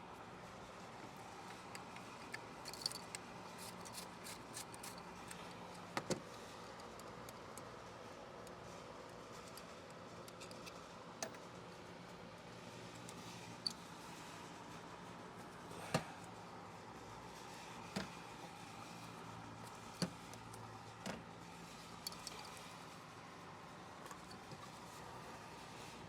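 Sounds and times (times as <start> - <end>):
small clicks and light rattles: 1.4 - 11.6, 21.8 - 22.8.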